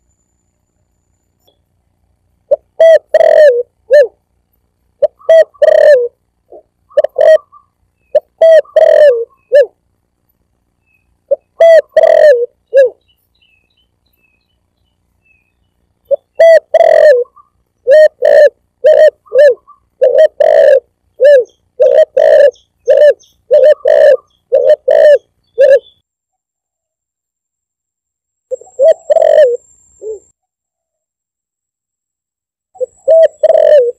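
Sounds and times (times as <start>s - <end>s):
dove cooing: 2.5s - 4.2s, 5.0s - 9.8s, 11.3s - 13.0s, 16.1s - 26.0s, 28.5s - 30.3s, 32.8s - 33.9s.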